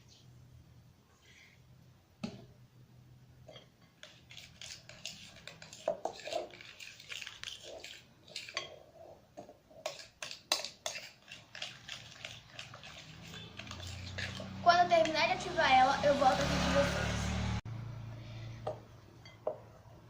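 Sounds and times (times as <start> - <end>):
clicks and scrapes against container: 3.5 - 15.2
utensil stirring slime: 3.8 - 16.6.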